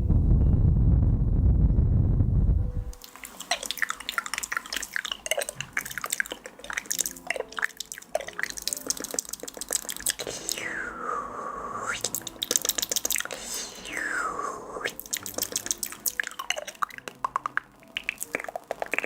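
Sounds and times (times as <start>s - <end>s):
loud low rumble: 0.0s - 3.0s
droplet-like plops: 3.0s - 10.4s, 15.0s - 19.0s
rapid wet clicks: 3.0s - 10.6s, 12.0s - 13.5s, 14.9s - 19.0s.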